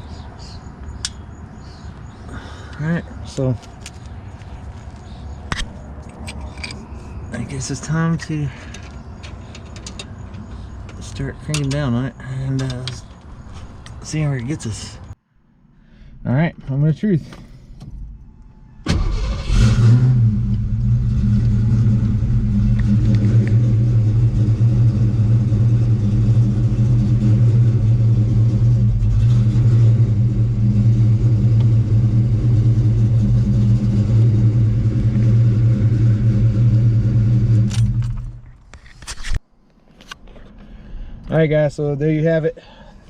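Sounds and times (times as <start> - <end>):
car engine starting and idling: 16.6 - 38.7.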